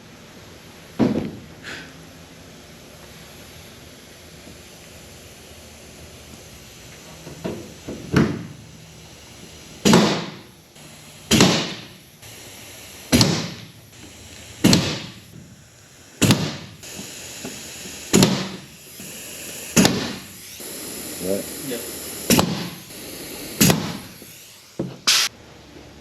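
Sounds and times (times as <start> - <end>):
rivet gun snapping: 16.2 - 20.4.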